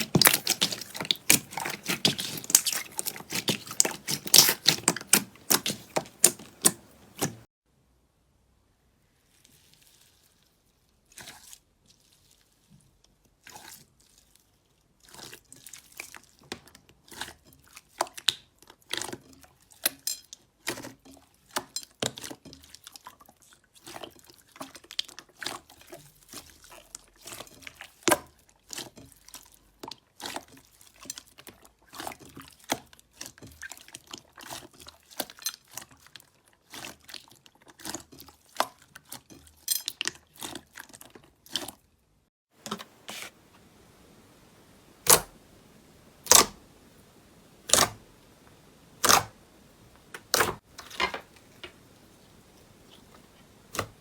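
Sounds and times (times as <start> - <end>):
slime squelching with wet clicks: 0.0 - 7.5, 15.0 - 23.2, 23.8 - 41.8.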